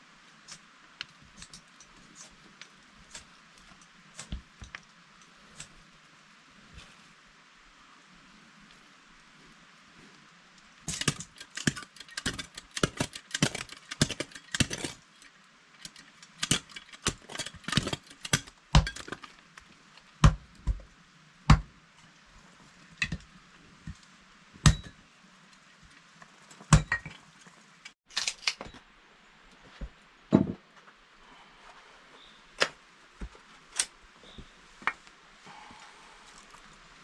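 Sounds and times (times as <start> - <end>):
hard objects clinking and knocking: 10.9 - 19.3.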